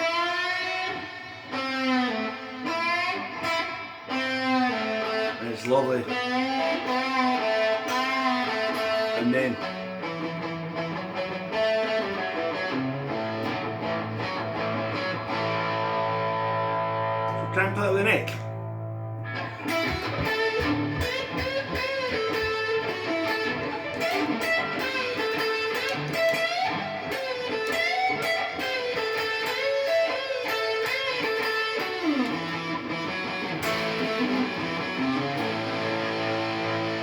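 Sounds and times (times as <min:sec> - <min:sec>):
electric guitar solo with bends: 0:00.0 - 0:37.0.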